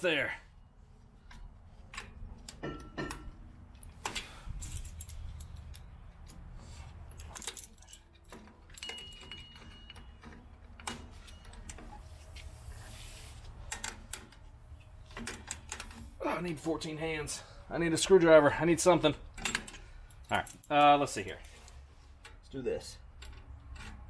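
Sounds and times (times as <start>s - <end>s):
metal brake parts clinking: 1.3s - 11.9s
high metallic ring: 8.8s - 10.2s
short hiss: 12.5s - 13.5s.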